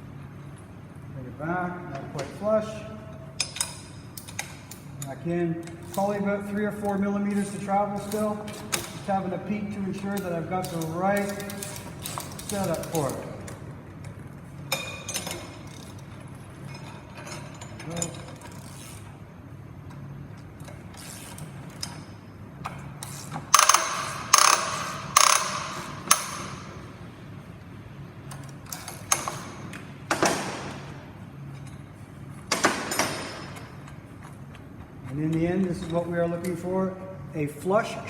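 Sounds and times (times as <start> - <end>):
ratchet wrench clicking: 6.8 - 9.0, 10.1 - 13.2, 23.0 - 26.9.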